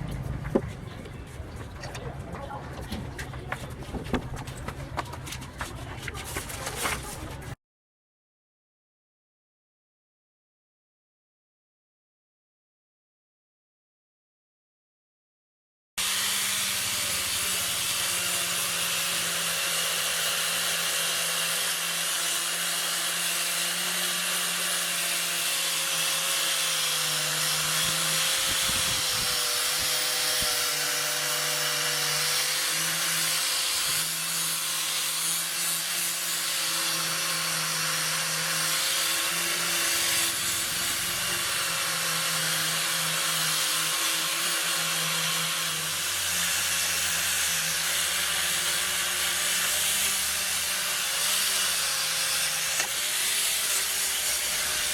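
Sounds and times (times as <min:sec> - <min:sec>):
power tool grinding rust: 0:16.0 - 0:54.9.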